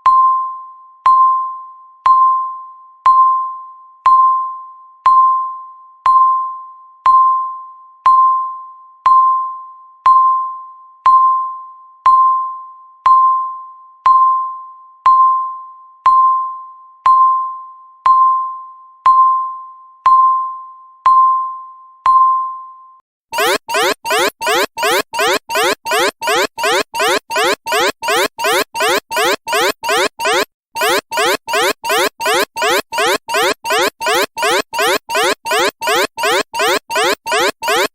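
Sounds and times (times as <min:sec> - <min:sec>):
alarm with rising sweeps: 0:23.4 - 0:37.9
countdown timer dings: 0:23.4 - 0:37.9.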